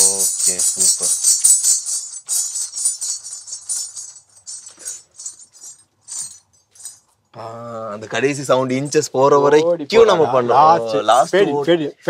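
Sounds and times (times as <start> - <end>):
ankle bells jingling: 0.0 - 7.2.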